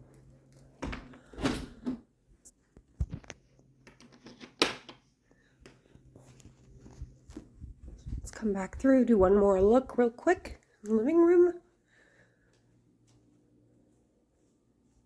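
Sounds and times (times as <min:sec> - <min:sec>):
door opening and shutting: 0:00.8 - 0:02.1.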